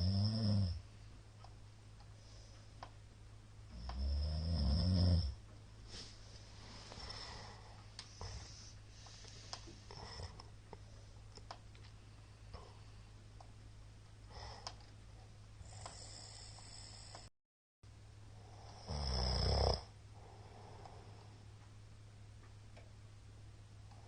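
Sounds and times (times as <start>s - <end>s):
steady low hum: 0.0s - 24.0s
soft breaths: 0.8s - 3.0s, 5.8s - 13.5s, 20.2s - 21.6s.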